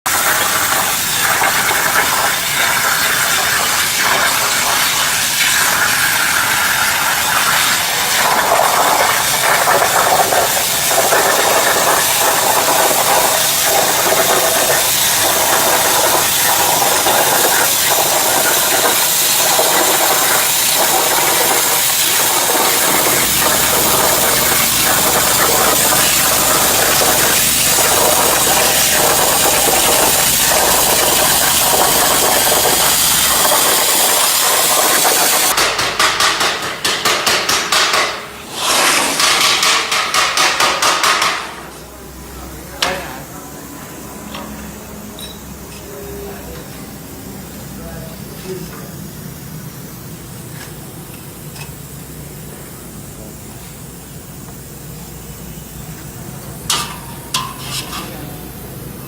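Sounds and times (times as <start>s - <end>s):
plasma torch cutting steel: 0.1s - 41.7s.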